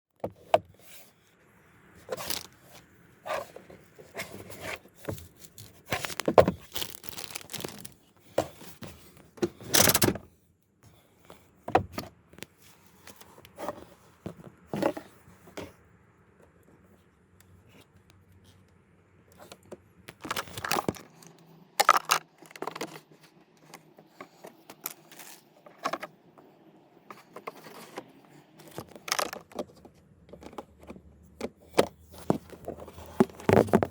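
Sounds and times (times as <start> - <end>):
plastic clicks and rustles: 2.0 - 2.8, 3.4 - 9.1, 16.5 - 26.1, 27.1 - 33.9.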